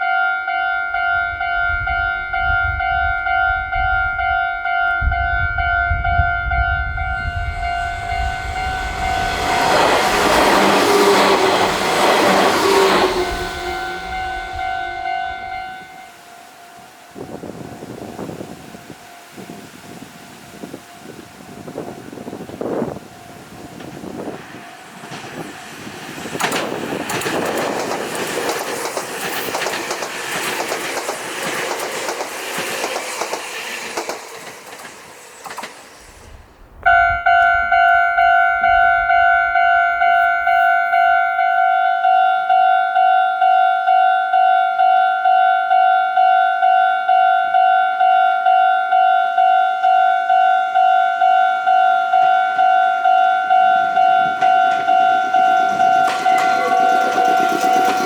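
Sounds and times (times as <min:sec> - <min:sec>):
railroad crossing alarm ringing: 0:00.0 - 0:58.0
train wheels clattering over rails: 0:08.0 - 0:15.2, 0:22.5 - 0:41.1, 0:53.6 - 0:58.0.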